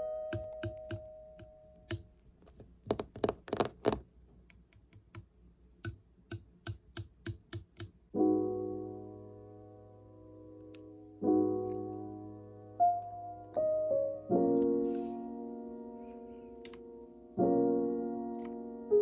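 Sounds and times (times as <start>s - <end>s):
soft piano-like music: 0.0s - 2.1s, 8.1s - 19.0s
keyboard typing clicks: 0.3s - 2.1s.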